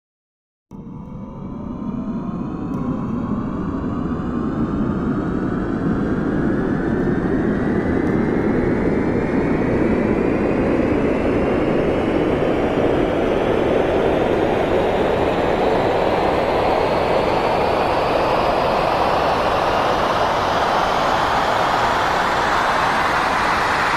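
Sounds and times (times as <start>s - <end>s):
aeroplane engines powering up: 0.8s - 23.9s.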